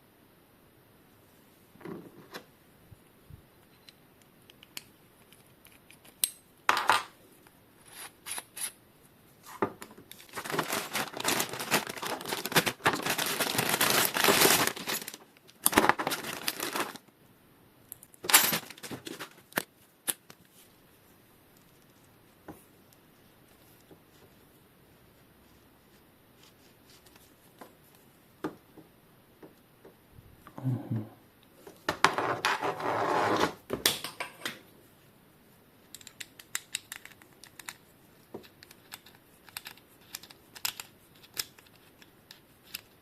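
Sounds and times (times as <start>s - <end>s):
packaging rustling and tearing: 10.1s - 17.0s, 18.2s - 19.6s.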